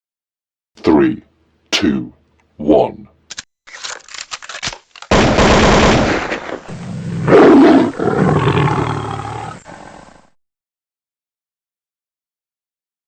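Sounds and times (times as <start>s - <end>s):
deep animal-like roar: 6.7s - 10.4s.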